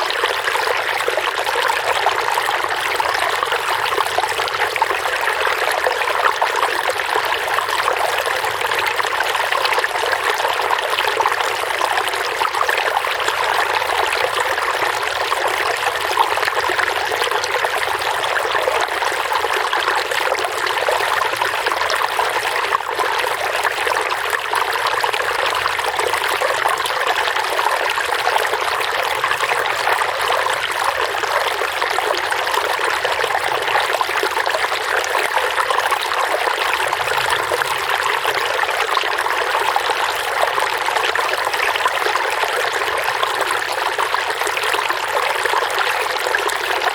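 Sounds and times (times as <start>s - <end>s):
water trickling and splashing: 0.0s - 46.9s.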